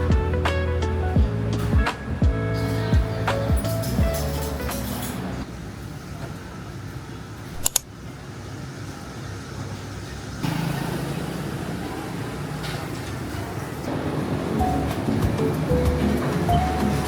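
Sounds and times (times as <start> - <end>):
road traffic rumble: 0.0 - 17.0
sharp double click: 7.6 - 7.9.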